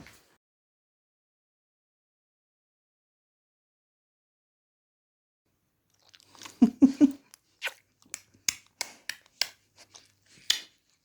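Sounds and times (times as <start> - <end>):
dog sniffing and licking: 6.0 - 11.0.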